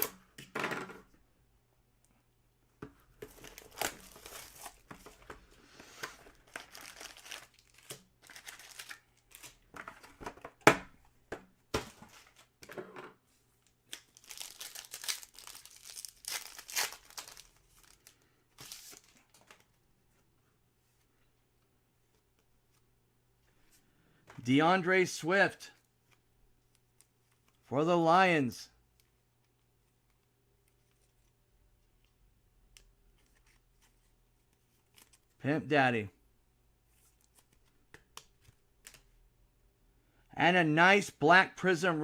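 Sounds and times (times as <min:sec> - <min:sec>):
plastic wrapping tearing and crinkling: 0:06.5 - 0:09.6, 0:13.9 - 0:19.1.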